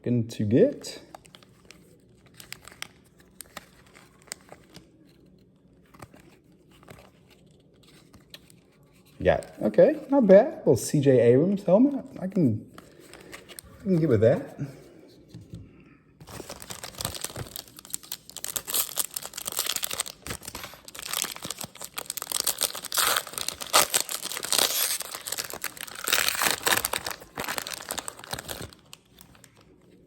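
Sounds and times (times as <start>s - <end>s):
plastic wrapper crinkling and tearing: 0.9s - 9.8s, 16.2s - 30.0s.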